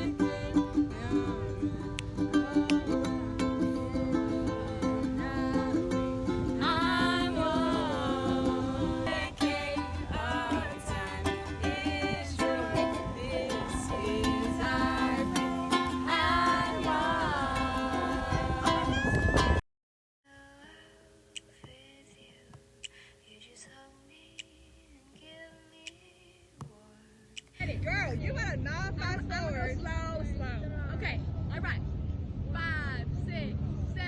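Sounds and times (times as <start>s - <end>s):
person singing: 0.0s - 19.6s
strummed ukulele: 0.0s - 19.6s.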